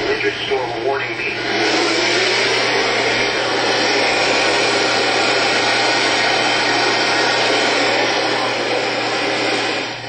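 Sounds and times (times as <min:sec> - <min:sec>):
radio static hiss: 0:00.0 - 0:10.0.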